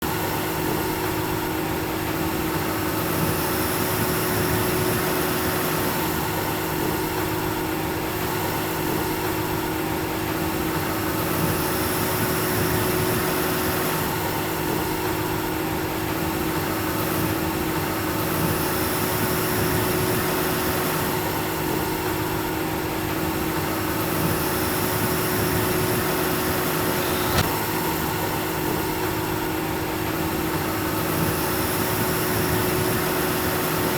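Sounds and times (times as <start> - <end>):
tractor and baler humming: 0.1 - 33.9
sharp mechanical click: 27.0 - 27.5.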